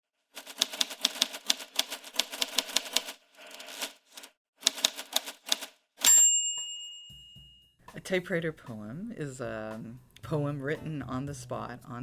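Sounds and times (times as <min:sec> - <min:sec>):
typewriter keystrokes: 0:00.4 - 0:06.2.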